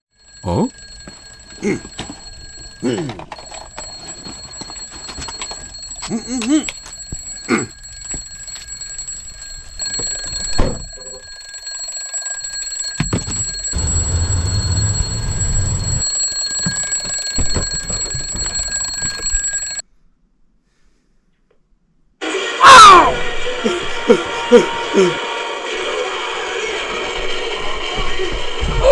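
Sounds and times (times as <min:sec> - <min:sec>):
alarm clock bell ringing: 0:00.0 - 0:19.8
man grunting and groaning: 0:01.6 - 0:01.9, 0:02.8 - 0:03.3, 0:06.1 - 0:06.7, 0:07.5 - 0:07.7, 0:22.7 - 0:25.2.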